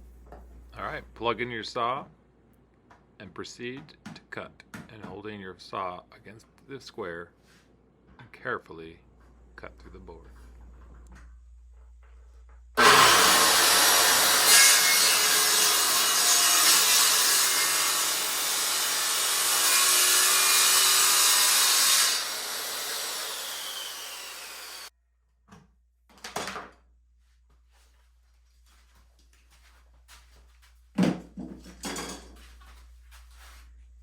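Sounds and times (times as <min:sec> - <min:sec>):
circular saw cutting board: 0:12.8 - 0:24.9.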